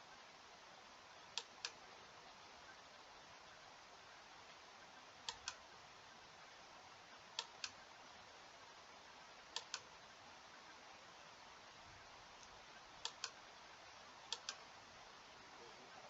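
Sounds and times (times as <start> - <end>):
faint room hiss: 0.0 - 16.0
computer mouse clicks: 1.3 - 1.8, 5.3 - 5.6, 7.4 - 7.8, 9.5 - 9.9, 12.4 - 13.4, 14.3 - 14.6.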